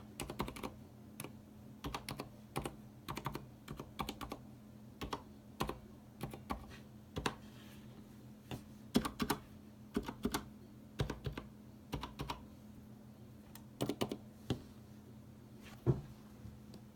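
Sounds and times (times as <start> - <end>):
mechanical keyboard typing: 0.1 - 4.4, 5.0 - 7.4, 8.9 - 12.4, 13.6 - 14.2.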